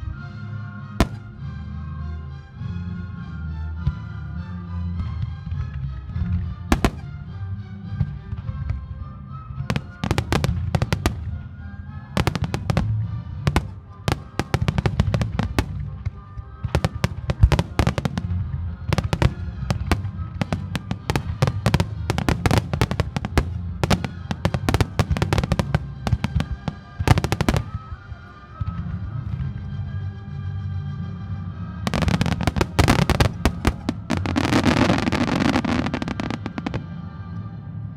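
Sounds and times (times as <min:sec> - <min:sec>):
fireworks bangs: 0:01.0 - 0:01.4, 0:06.7 - 0:07.2, 0:09.7 - 0:11.4, 0:12.2 - 0:16.1, 0:16.7 - 0:28.0, 0:31.9 - 0:36.9.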